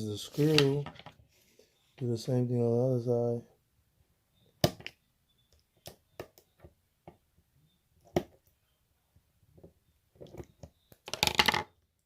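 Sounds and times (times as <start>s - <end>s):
hands clicking and tapping: 4.6s - 7.2s.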